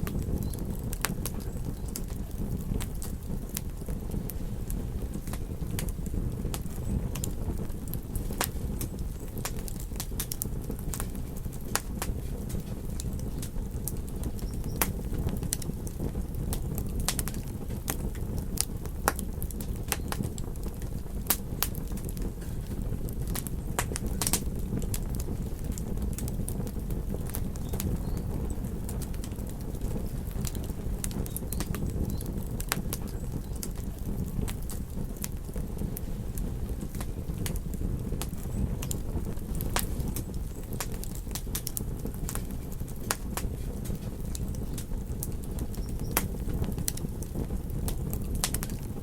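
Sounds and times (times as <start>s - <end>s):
fire crackling and popping: 0.0s - 49.0s
fire rumbling: 0.0s - 49.0s.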